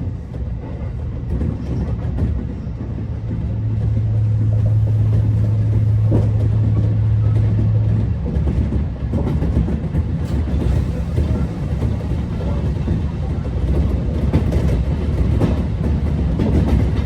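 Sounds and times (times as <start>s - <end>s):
electric train hum: 0.0s - 17.0s
train wheels rattling over rails: 0.0s - 17.0s.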